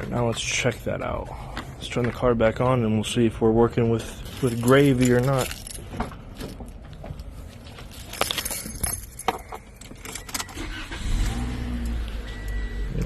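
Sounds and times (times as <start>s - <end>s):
car keys jangling: 4.1s - 11.0s.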